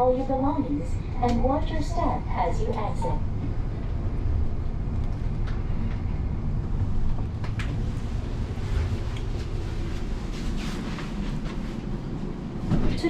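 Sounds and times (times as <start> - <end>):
train low rumble: 0.0 - 13.0.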